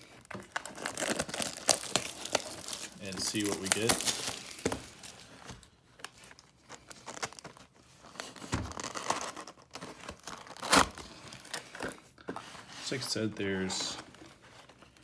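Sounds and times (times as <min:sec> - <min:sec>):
plastic wrapping crinkling: 0:00.0 - 0:12.0.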